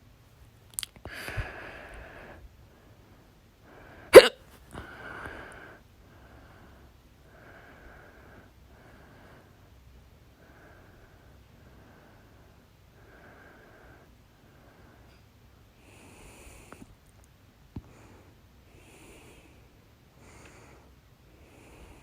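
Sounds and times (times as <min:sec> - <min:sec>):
hiccups: 0:04.2 - 0:04.5.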